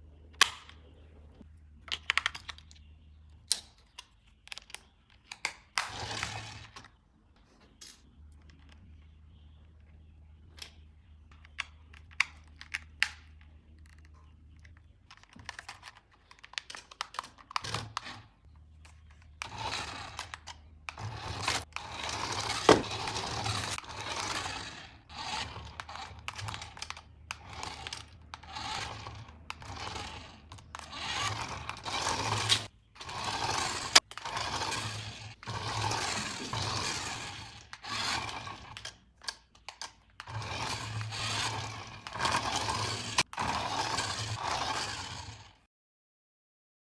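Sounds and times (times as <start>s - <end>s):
packaging rustling and scraping: 21.3s - 24.6s.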